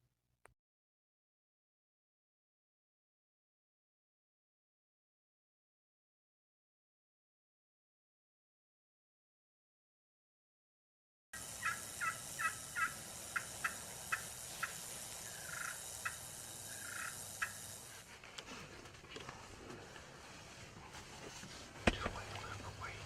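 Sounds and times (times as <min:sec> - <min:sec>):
turkey calling: 0:11.4 - 0:18.0.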